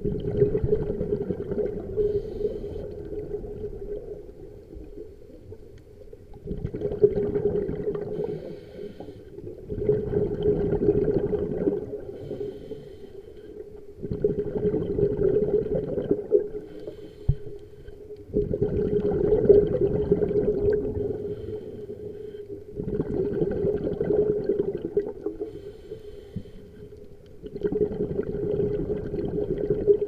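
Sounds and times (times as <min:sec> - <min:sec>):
exhaled bubbles gurgling: 0:00.0 - 0:30.0
diver breathing through regulator: 0:02.0 - 0:03.2, 0:08.0 - 0:09.4, 0:12.0 - 0:13.6, 0:16.6 - 0:18.0, 0:21.0 - 0:22.6, 0:25.4 - 0:27.0.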